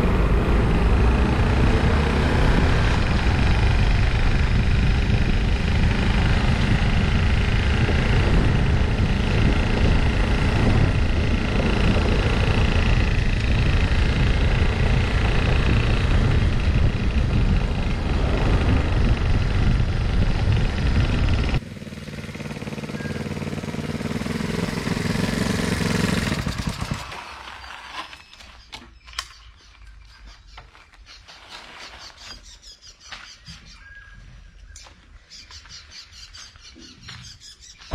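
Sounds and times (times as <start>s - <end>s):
motorcycle engine running: 0.0s - 27.8s.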